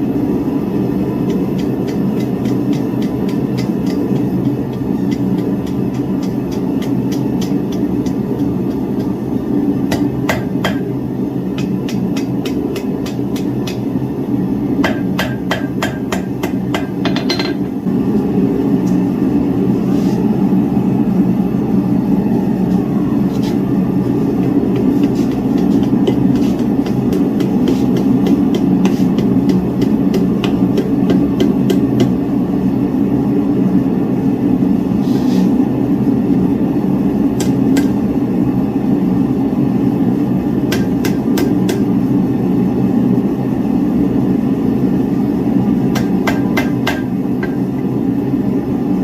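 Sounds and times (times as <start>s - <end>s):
hammer striking steel on anvil: 9.9s - 10.9s, 14.8s - 17.7s, 40.7s - 41.9s, 45.9s - 47.7s.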